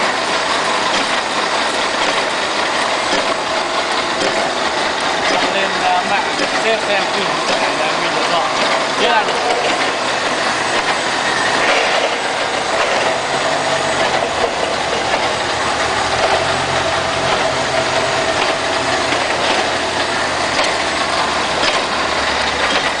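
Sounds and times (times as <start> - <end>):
shearing machine running: 0.0 - 23.0.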